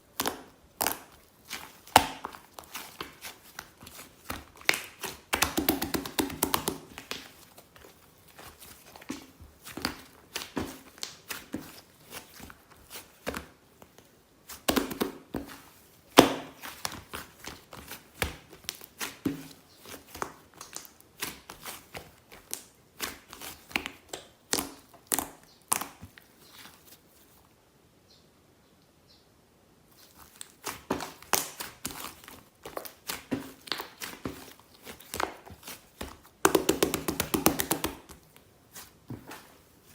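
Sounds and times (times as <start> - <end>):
paper or plastic crinkling: 0.8 - 14.7, 26.0 - 27.5, 29.9 - 39.9.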